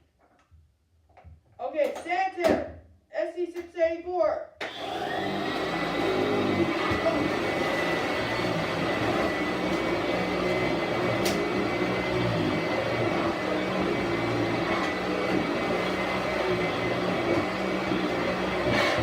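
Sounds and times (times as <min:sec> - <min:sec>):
vacuum cleaner motor whine: 0:04.6 - 0:19.0.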